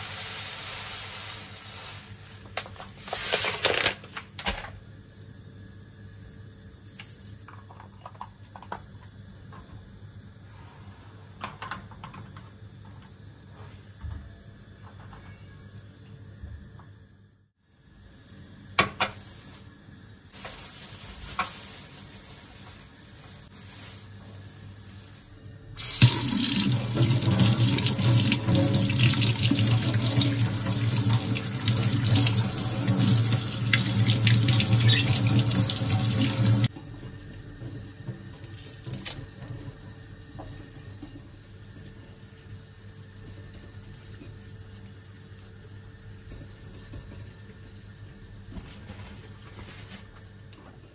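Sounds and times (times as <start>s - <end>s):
tap water running into sink: 25.8s - 36.7s.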